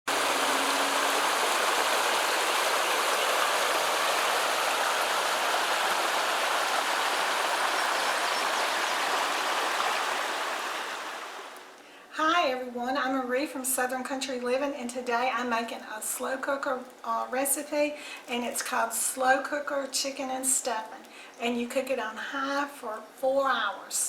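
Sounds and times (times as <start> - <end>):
rushing water: 0.0 - 11.8.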